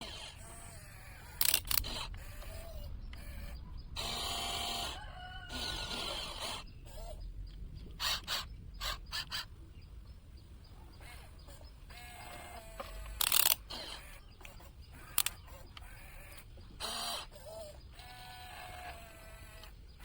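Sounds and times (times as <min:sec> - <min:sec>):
sharp clicks: 0:01.3 - 0:04.9, 0:11.1 - 0:20.0
chickens clucking: 0:02.0 - 0:20.0
rooster crowing: 0:04.4 - 0:06.4.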